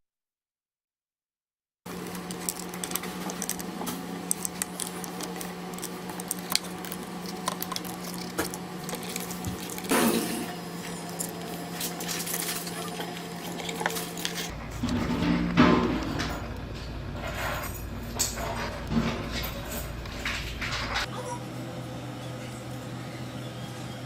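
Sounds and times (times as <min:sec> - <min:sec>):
loud scraping rush: 0:01.9 - 0:21.1
tools clicking and scraping: 0:01.9 - 0:21.1
steady low hum: 0:01.9 - 0:24.0.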